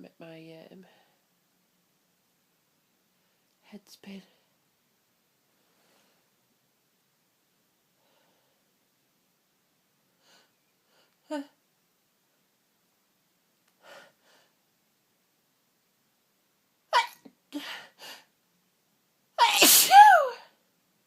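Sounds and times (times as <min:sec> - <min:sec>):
woman sneezing: 0:17.0 - 0:17.9, 0:19.4 - 0:20.6.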